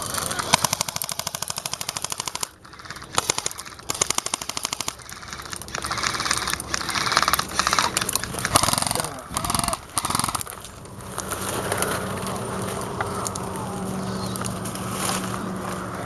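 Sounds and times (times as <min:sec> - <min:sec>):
airsoft guns firing full auto: 0:00.0 - 0:10.6.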